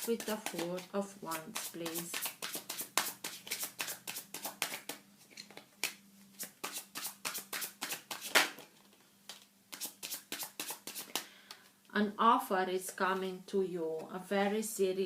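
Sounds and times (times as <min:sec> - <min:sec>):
cards being shuffled: 0:00.0 - 0:11.2.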